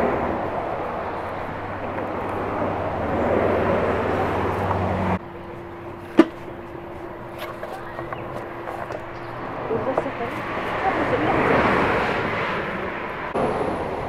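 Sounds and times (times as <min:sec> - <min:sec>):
motor vehicle running: 0:00.0 - 0:14.0.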